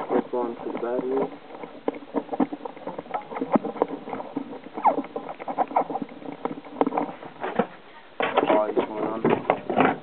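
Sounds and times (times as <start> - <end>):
short squeaks: 4.7 - 6.0.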